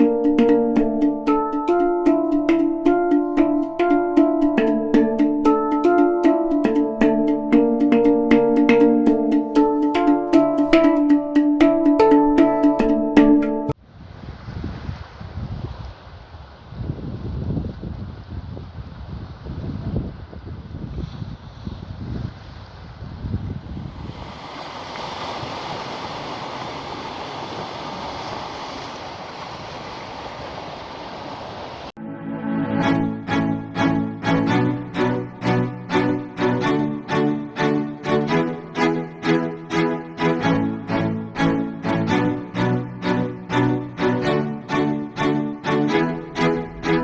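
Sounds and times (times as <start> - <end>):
instrumental background music: 0.0 - 13.8, 32.0 - 47.0
wind buffeting microphone: 13.8 - 31.9
water rushing: 23.8 - 32.0.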